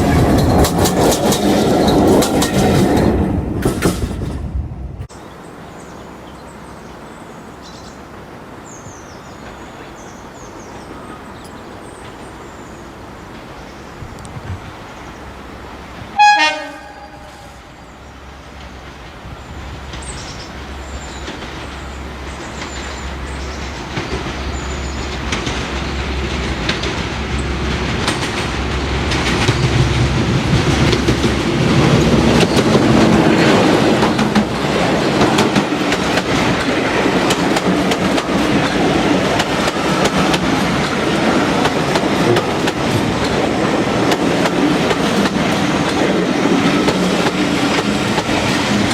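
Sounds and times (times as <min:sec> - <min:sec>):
train wheels clattering: 0:00.0 - 0:04.6, 0:18.5 - 0:48.9
diesel locomotive engine: 0:00.0 - 0:48.9
locomotive horn blast: 0:16.2 - 0:17.9.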